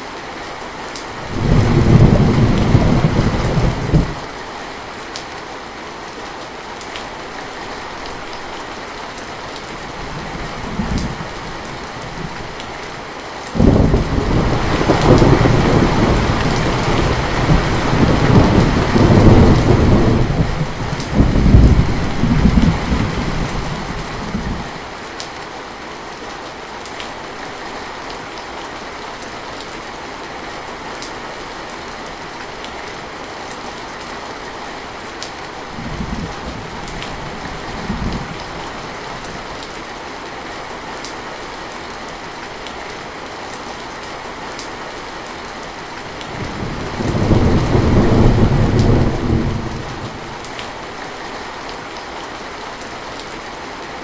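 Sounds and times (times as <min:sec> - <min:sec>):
heavy rain: 0:00.0 - 0:54.0
rolling thunder rumble: 0:01.2 - 0:04.3, 0:13.6 - 0:24.7, 0:46.3 - 0:50.6.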